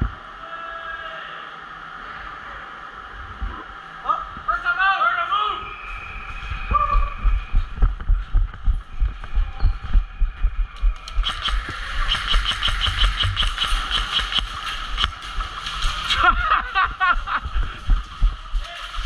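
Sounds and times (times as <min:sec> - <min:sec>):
low thuds of camera jostling: 0:07.2 - 0:15.6
rapid sharp ticks: 0:10.7 - 0:16.1.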